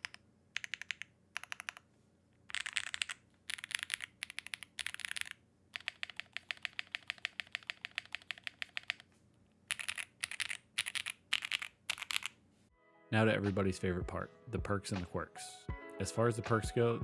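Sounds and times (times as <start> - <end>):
clacky keyboard typing: 0.0 - 1.8, 2.5 - 9.1, 9.7 - 12.4.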